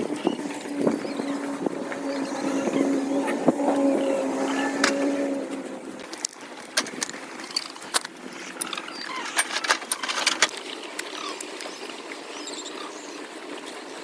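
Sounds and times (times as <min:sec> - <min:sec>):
hard objects clicking and knocking: 0:06.2 - 0:10.6.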